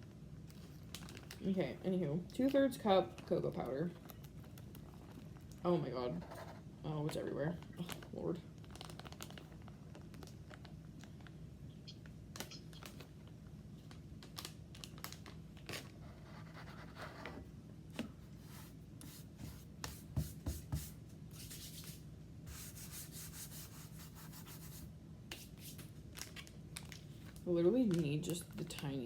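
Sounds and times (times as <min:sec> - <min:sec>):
powder scraping and rustling: 0:18.2 - 0:26.4.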